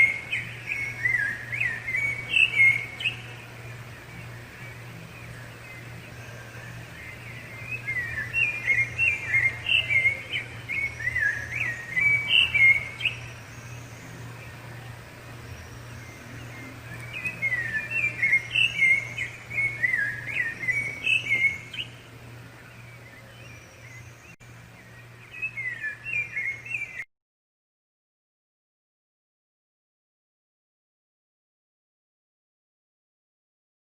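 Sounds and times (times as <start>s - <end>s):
thrush singing whistled phrases: 0.0s - 22.1s.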